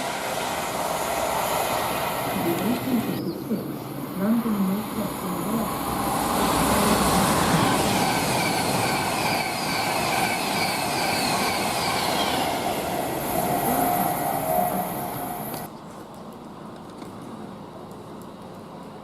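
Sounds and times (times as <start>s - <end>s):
train wheel and rail noise: 0.0s - 19.0s.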